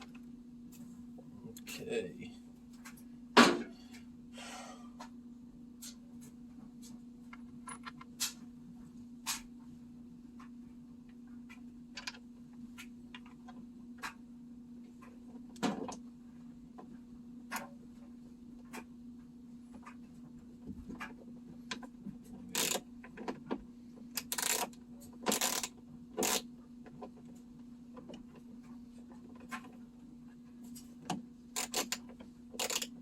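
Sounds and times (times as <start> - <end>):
steady low hum: 0.0 - 33.0
tools clicking and knocking: 22.5 - 23.4, 24.2 - 27.1, 31.0 - 33.0.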